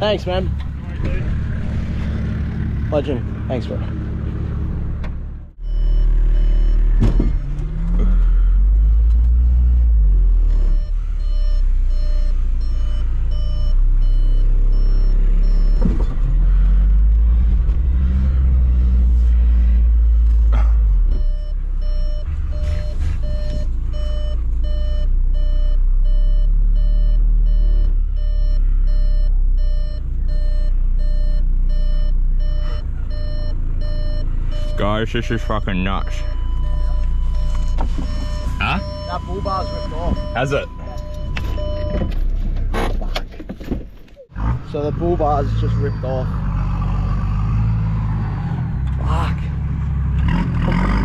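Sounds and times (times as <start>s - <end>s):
engine revving with low rumble: 0.0s - 51.0s
reversing beeper: 5.6s - 7.5s, 9.6s - 16.0s, 21.1s - 42.3s, 45.3s - 46.3s.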